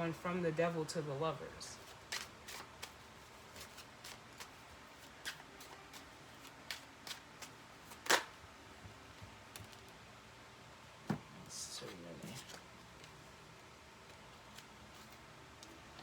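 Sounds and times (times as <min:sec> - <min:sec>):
cards being shuffled: 0:01.8 - 0:08.4
card slap: 0:07.9 - 0:08.3.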